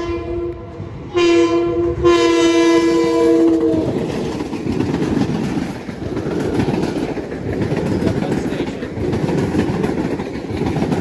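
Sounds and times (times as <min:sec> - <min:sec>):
train horn blasts: 0:00.0 - 0:04.1
train rumbling and clattering past: 0:00.0 - 0:11.0.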